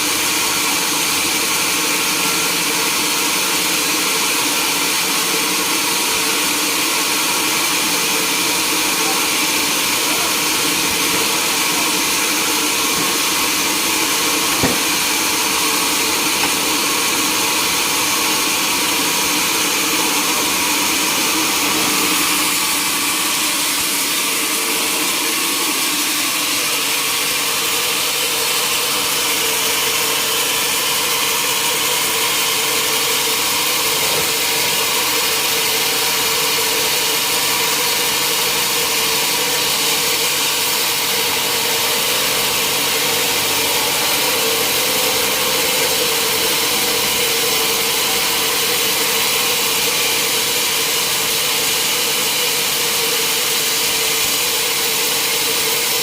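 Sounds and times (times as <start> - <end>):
sawmill machinery hum: 0.0 - 56.0
sharp knock: 14.5 - 15.0.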